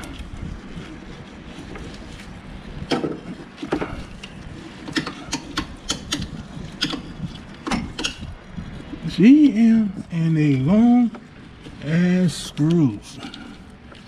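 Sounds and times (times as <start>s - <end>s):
hand tools clicking on metal: 4.2s - 8.3s.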